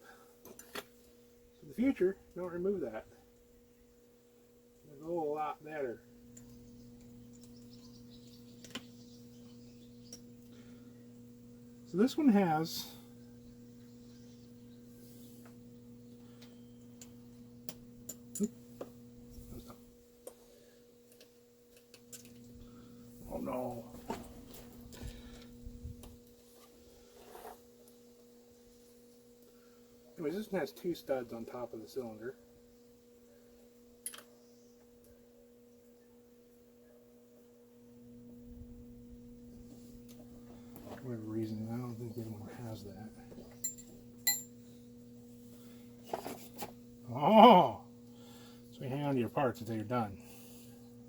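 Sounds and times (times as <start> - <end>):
electrical hum: 0.0 - 51.0
clicks and taps of small parts: 34.0 - 34.3
metallic ring: 43.6 - 44.6.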